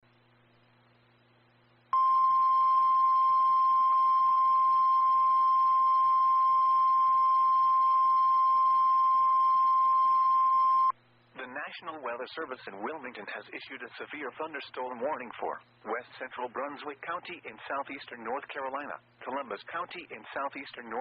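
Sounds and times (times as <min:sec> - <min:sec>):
faint hum: 0:00.0 - 0:21.0
radio hiss: 0:11.3 - 0:21.0.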